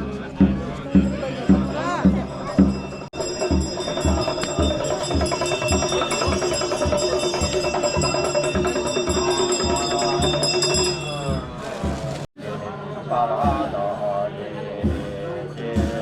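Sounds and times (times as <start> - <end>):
droning chant: 0.0 - 11.8, 12.4 - 16.0
drum beating steadily: 0.0 - 12.3, 13.3 - 16.0
ringing metal percussion: 0.4 - 12.0.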